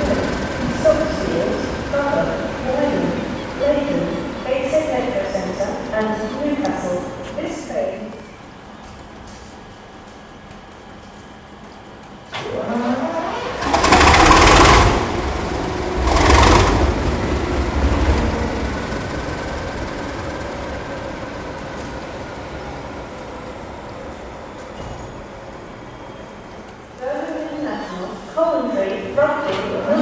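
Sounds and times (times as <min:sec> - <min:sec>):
engine firing blasts: 0:00.0 - 0:07.2, 0:12.3 - 0:25.0
diesel locomotive engine starting: 0:00.0 - 0:30.0.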